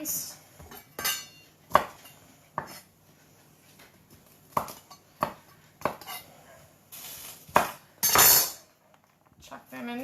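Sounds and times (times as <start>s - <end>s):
knife chopping on cutting board: 1.7s - 2.8s, 4.5s - 6.3s, 7.5s - 8.4s.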